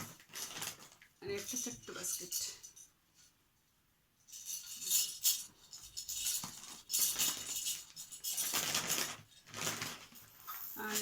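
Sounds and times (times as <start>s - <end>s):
packaging rustling: 0.0s - 1.1s, 6.4s - 10.7s.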